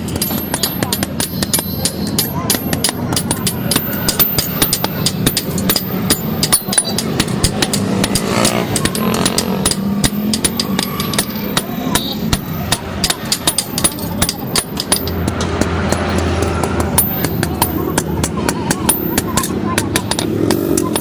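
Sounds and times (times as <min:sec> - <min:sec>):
faint voices: 0:00.0 - 0:21.0
hammers striking metal: 0:00.0 - 0:21.0.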